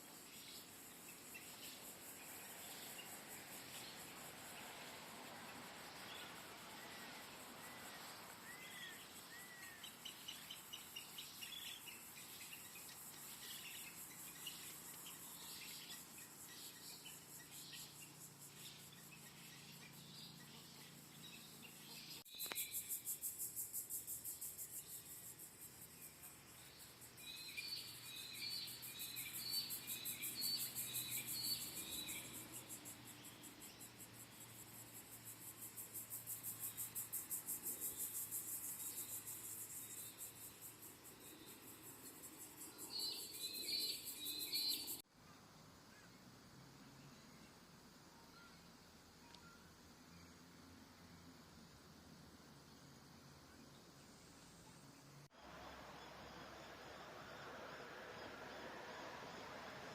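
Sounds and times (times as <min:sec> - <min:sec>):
insects trilling: 0:00.0 - 0:45.1, 0:48.2 - 0:59.9.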